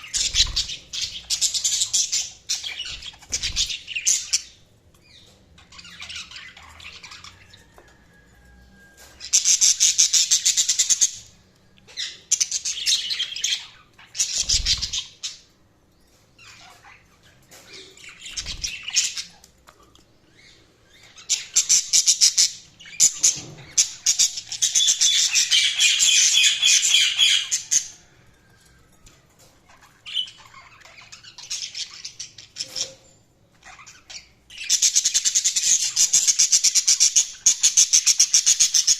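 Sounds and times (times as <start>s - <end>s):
budgerigars chattering and chirping: 0.0s - 7.7s, 9.2s - 11.3s, 20.4s - 28.1s, 29.7s - 38.9s.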